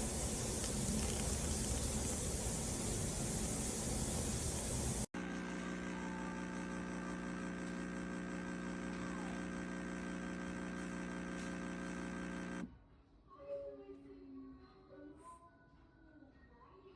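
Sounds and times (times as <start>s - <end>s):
steady electric hum: 0.0s - 12.7s.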